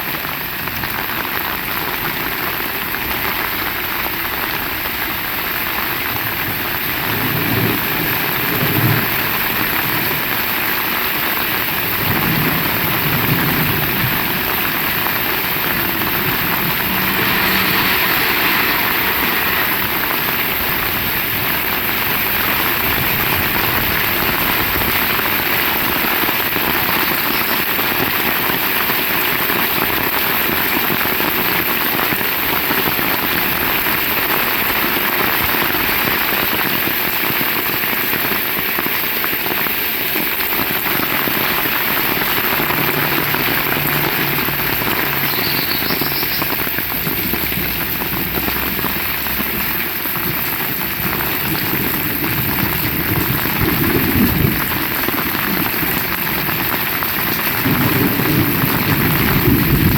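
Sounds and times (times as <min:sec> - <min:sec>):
heavy rain: 0:00.0 - 0:59.9
low rumbles: 0:11.4 - 0:26.0, 0:40.6 - 0:59.9.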